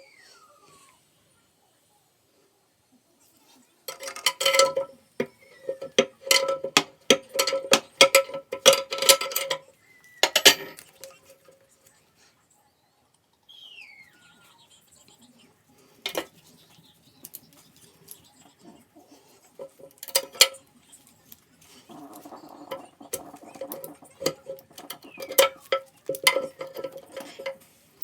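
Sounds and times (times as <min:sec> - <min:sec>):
hard objects clinking together: 0:03.9 - 0:11.2, 0:16.1 - 0:16.3, 0:19.6 - 0:20.6, 0:21.8 - 0:28.0.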